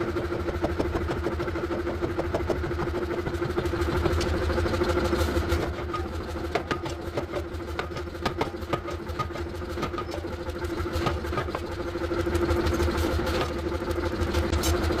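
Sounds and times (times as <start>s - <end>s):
sharp clicks and knocks: 0.4s - 4.4s, 5.6s - 10.3s.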